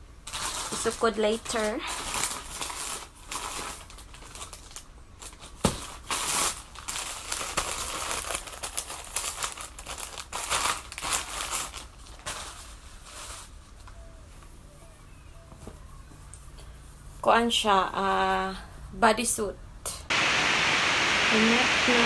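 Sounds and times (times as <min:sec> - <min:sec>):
packaging and clothing rustling: 0:00.2 - 0:13.9.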